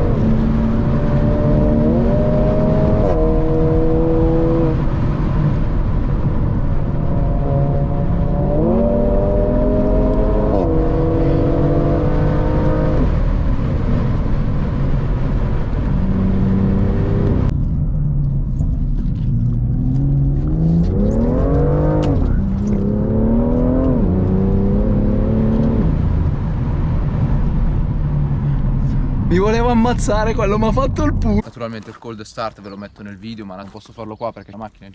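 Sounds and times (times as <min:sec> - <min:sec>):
car engine accelerating: 0:00.0 - 0:31.4.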